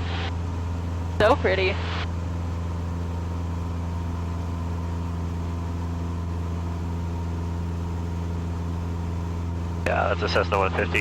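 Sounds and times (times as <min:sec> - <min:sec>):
airplane engine droning in flight: 0:00.0 - 0:11.0.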